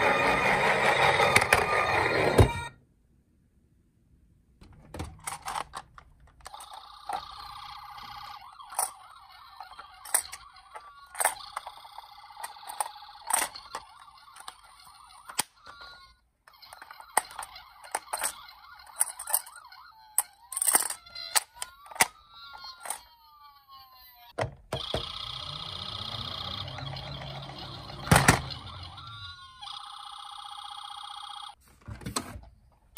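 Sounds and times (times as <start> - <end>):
toy car electronic sirens: 0.0 - 2.8, 6.5 - 31.6
toy cars clicking and knocking: 5.0 - 30.7.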